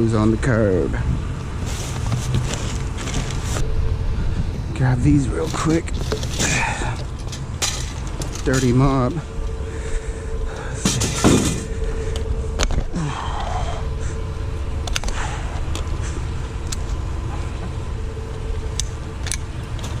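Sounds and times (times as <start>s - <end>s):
vehicle engine idling: 0.0s - 20.0s
loud knock and clatter: 10.8s - 11.7s.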